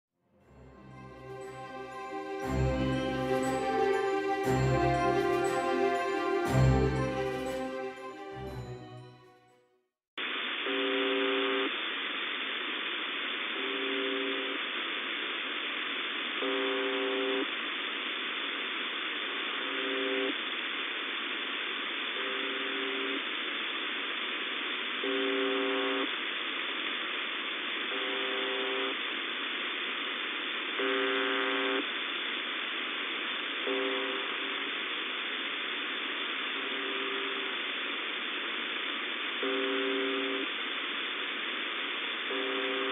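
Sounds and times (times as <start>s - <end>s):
receiver noise hiss: 10.2s - 42.9s.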